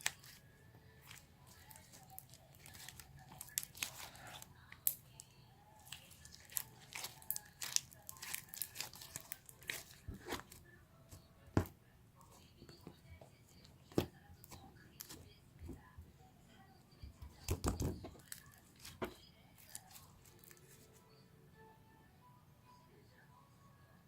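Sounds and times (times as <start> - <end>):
slime squished by hand: 1.0 - 5.0, 5.8 - 10.6.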